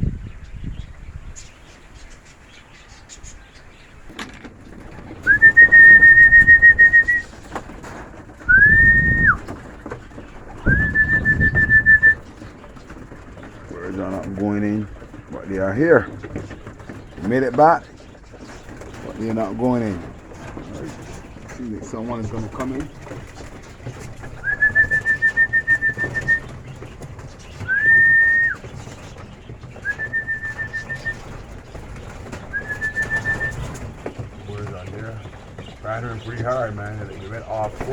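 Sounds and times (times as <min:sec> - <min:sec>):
high whistled notes: 0:05.3 - 0:07.3, 0:10.7 - 0:12.2.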